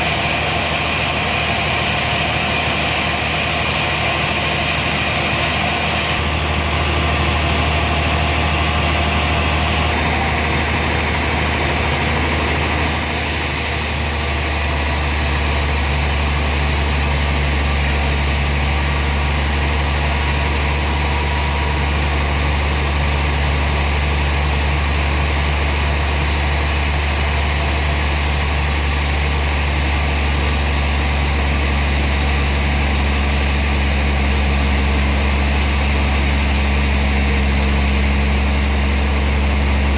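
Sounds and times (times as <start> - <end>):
sawmill machinery humming: 0.0 - 39.9
machinery hiss: 10.0 - 39.9.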